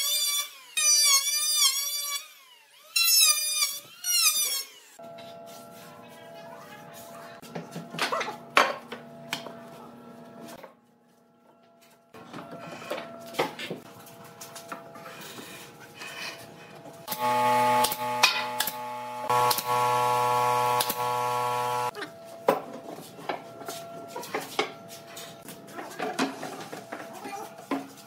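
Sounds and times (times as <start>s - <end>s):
power tool motor running: 17.0s - 21.9s.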